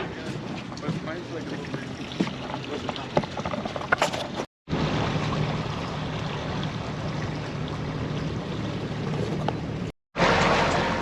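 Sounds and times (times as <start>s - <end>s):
boat engine hum: 0.0s - 11.0s
water rushing past hull: 4.7s - 11.0s.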